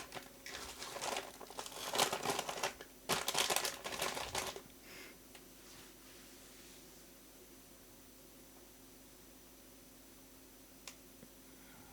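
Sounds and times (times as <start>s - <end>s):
packaging crinkling and rustling: 0.0s - 4.7s.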